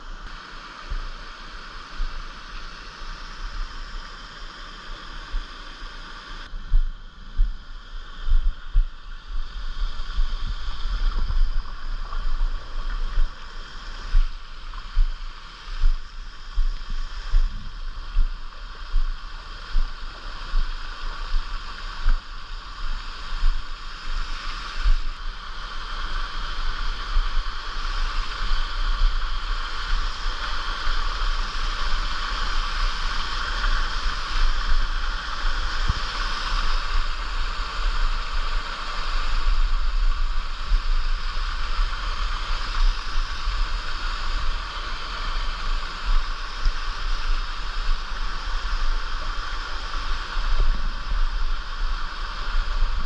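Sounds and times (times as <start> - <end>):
steady hiss: 0.0 - 53.0
footsteps splashing through stream: 9.6 - 19.9.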